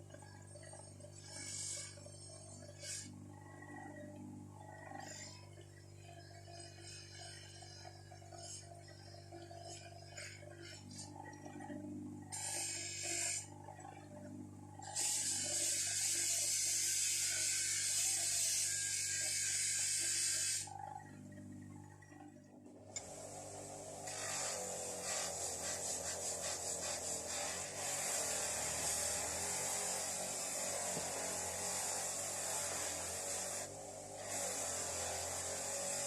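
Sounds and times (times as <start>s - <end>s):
spanner scraping on spinning wheel: 12.2s - 13.6s, 14.8s - 20.7s, 23.0s - 36.0s
electric motor humming: 14.7s - 20.8s, 22.9s - 36.0s.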